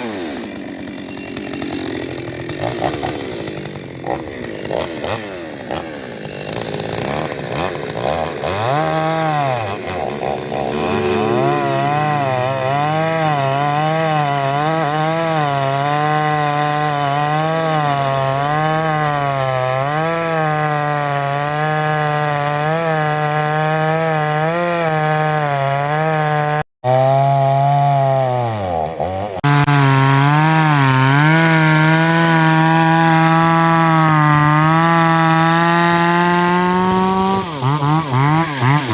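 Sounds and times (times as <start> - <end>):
chainsaw cutting through a log: 0.0 - 38.9.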